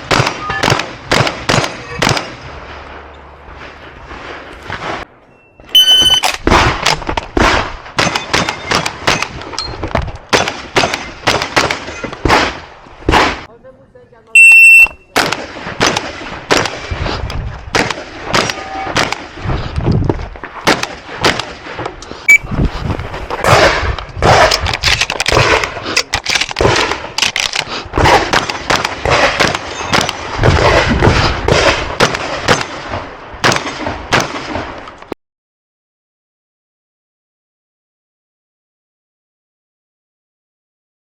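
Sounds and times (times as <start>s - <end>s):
shotgun shots: 0.0s - 2.4s, 5.8s - 9.4s, 10.3s - 13.5s, 14.4s - 16.9s, 17.7s - 19.4s, 20.6s - 21.8s, 23.4s - 27.4s, 28.0s - 34.8s
shot timer start beep: 5.4s - 6.3s, 14.4s - 15.1s.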